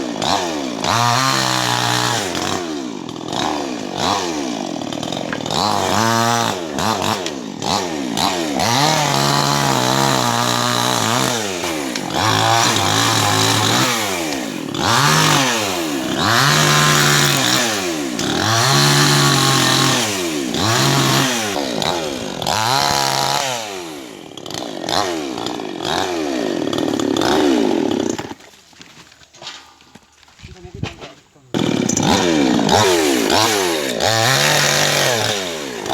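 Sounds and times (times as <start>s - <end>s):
chainsaw cutting wood: 0.0s - 28.6s, 31.5s - 35.9s.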